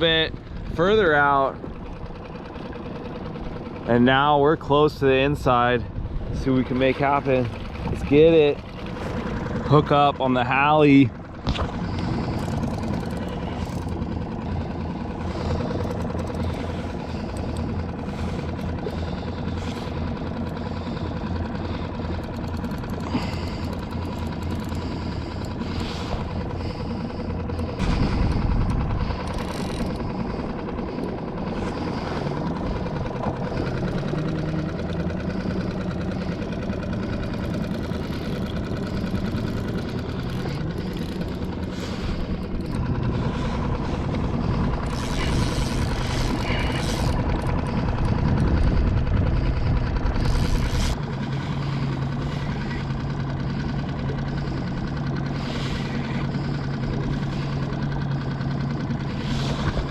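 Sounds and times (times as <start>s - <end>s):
low rush of wind or water: 0.0s - 17.2s
small boat motor idling: 0.0s - 59.9s.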